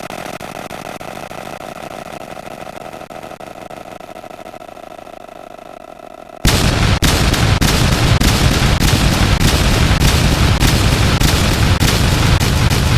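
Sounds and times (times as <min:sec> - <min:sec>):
steady hum: 0:00.0 - 0:12.9
distorted bowling pin crashes: 0:06.4 - 0:12.9.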